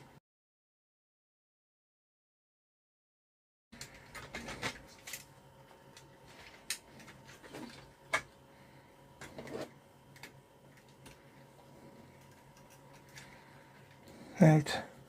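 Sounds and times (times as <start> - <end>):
parts and tools clicking: 3.8 - 5.3, 12.1 - 14.1
faint steady whine: 3.8 - 15.0.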